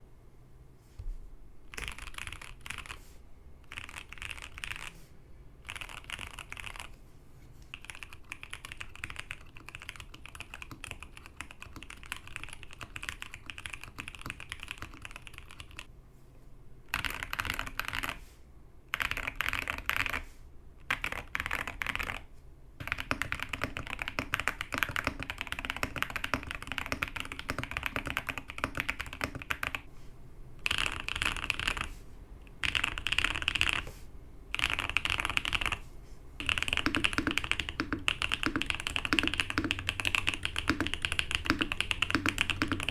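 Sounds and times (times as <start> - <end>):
mechanical keyboard typing: 1.7 - 3.0, 3.6 - 5.0, 5.6 - 7.0, 7.7 - 15.9, 16.9 - 18.2, 18.9 - 20.2, 20.8 - 29.9, 30.6 - 31.9, 32.5 - 33.9, 34.5 - 35.8, 36.4 - 42.9.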